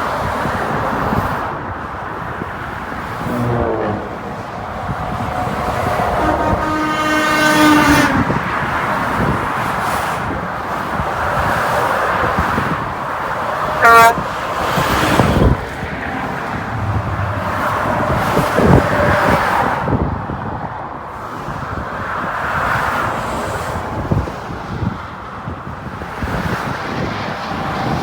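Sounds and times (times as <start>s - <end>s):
highway traffic passing: 0.0s - 28.0s
truck horn blast: 3.2s - 5.2s, 5.8s - 8.4s, 13.8s - 15.6s, 16.6s - 18.8s.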